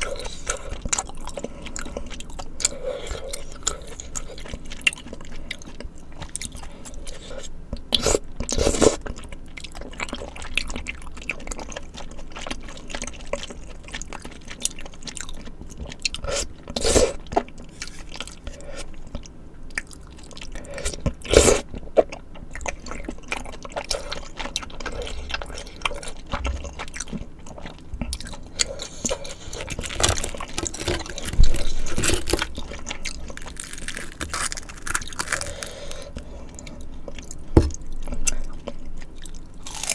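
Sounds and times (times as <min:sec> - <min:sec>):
wet chewing mouth sounds: 0:00.0 - 0:39.9
crunchy bites: 0:28.2 - 0:36.2.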